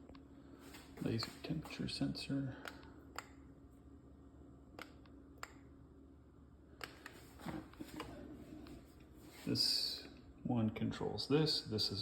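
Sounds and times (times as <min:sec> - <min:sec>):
low steady hum: 0:00.0 - 0:12.0
soft handling sounds: 0:00.5 - 0:02.9, 0:06.8 - 0:10.2.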